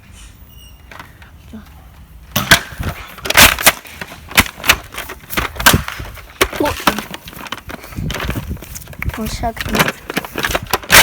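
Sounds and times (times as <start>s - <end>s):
loud crunching knocks and clatters: 2.3s - 11.0s.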